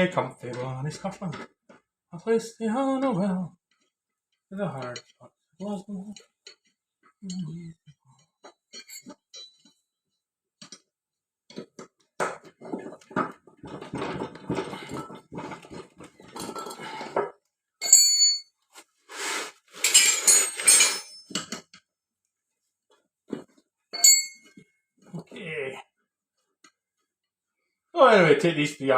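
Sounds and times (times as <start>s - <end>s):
metal clinking and rattling: 8.2s - 9.8s, 11.5s - 18.5s, 19.8s - 21.8s, 23.3s - 24.6s
ringing chinks of metal on metal: 8.7s - 9.8s, 17.8s - 18.5s, 24.0s - 24.6s.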